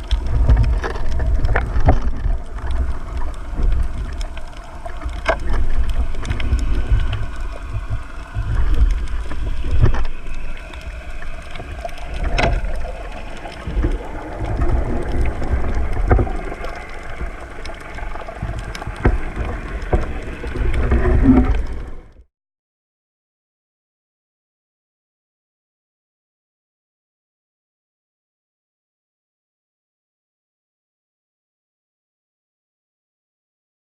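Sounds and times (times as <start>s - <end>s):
water sloshing against microphone: 0.0s - 22.2s.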